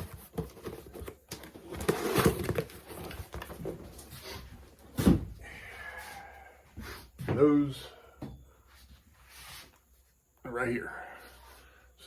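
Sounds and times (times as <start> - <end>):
rustling of motorcycle parts: 0.0 - 5.4.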